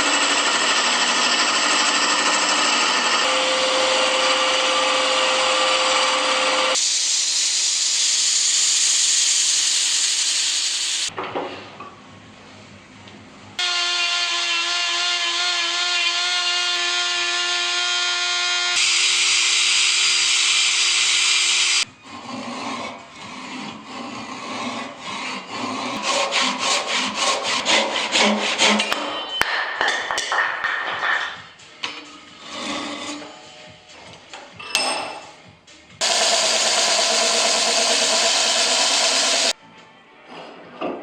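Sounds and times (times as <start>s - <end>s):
power tool motor whine: 0.0s - 11.1s, 13.6s - 21.9s, 36.0s - 39.6s
rasping strokes: 22.0s - 29.0s.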